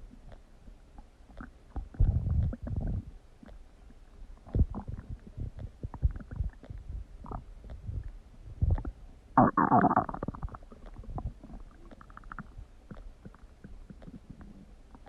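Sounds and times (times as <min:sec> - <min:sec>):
stomach rumbling: 0:00.0 - 0:15.0
stomach gurgles and pops: 0:01.0 - 0:03.6, 0:04.4 - 0:15.0.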